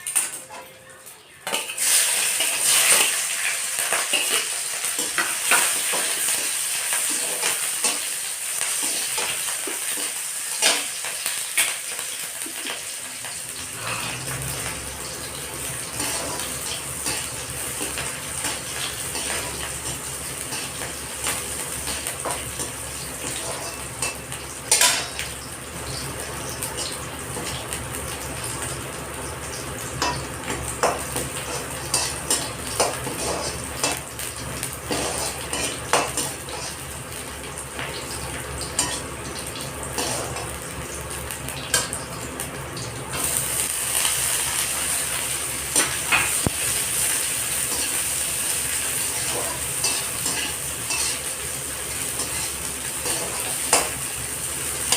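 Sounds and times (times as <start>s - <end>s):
rice sizzling in a pan: 0.0s - 54.9s
metal spoon scraping a pan: 13.7s - 14.4s, 16.0s - 25.3s, 30.0s - 34.1s, 34.8s - 36.9s, 40.0s - 40.6s, 45.7s - 54.0s.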